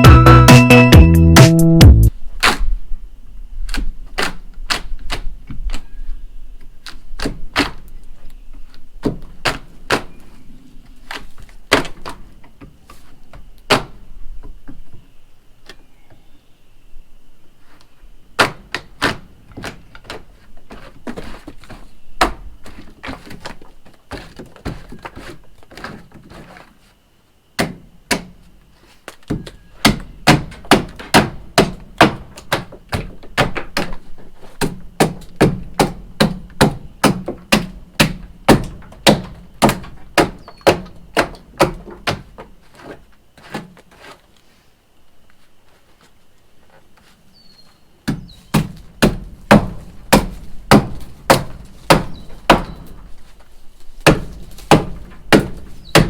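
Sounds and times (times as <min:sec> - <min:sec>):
tool striking wood: 0:29.3 - 0:34.0, 0:34.6 - 0:42.2, 0:48.1 - 0:53.0, 0:54.0 - 0:56.0.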